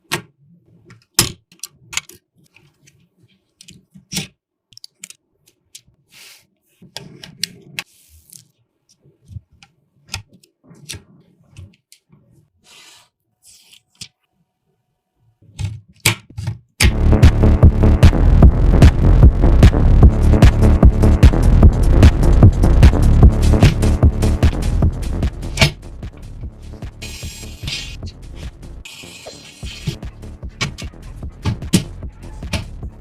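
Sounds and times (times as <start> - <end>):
clicks and taps of parts handled: 3.6 - 6.0.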